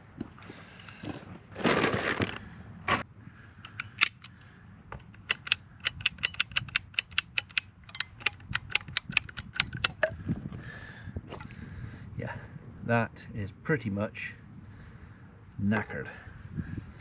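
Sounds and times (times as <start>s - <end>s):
ratchet tool clicking: 5.2s - 10.0s.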